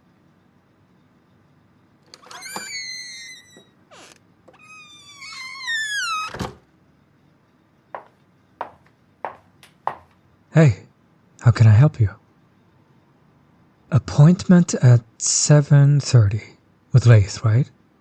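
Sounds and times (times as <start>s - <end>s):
door creaking on hinges: 2.0s - 6.6s
door shutting with heavy thud: 2.2s - 4.7s, 5.3s - 6.6s.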